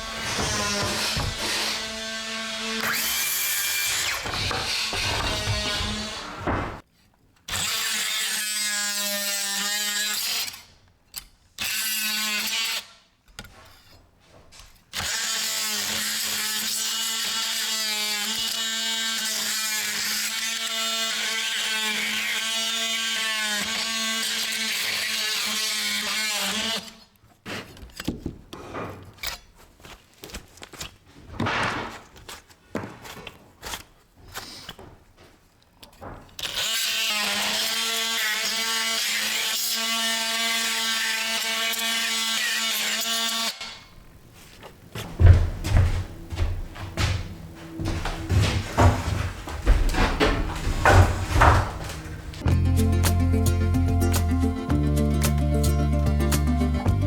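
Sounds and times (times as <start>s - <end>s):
knocks and scraping: 0.0s - 6.8s, 43.6s - 52.5s.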